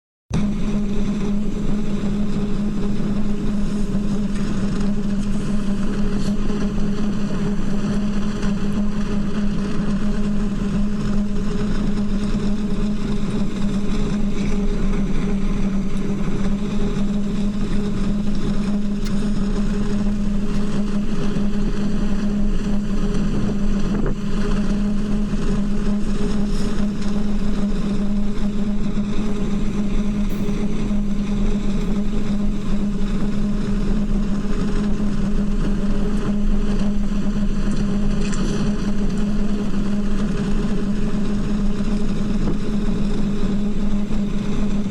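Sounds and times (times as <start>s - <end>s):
low hum of wind in pipes: 0.3s - 44.9s
faint higher tone: 30.3s - 33.0s.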